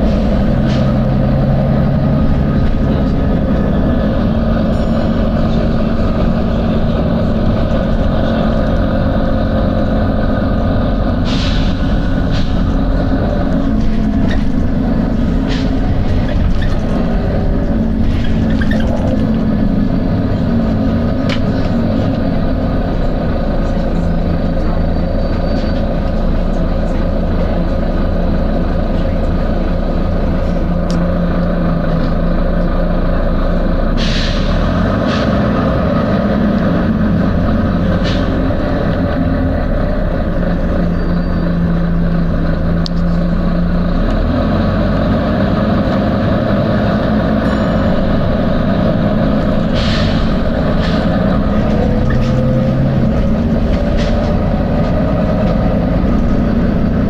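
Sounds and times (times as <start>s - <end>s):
bus diesel engine running: 0.0s - 57.0s
short air hisses: 11.3s - 12.6s, 34.0s - 34.5s.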